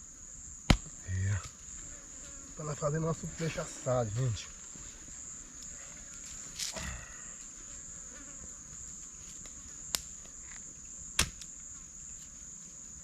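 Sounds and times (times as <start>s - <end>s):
high-pitched insect chorus: 0.0s - 13.0s.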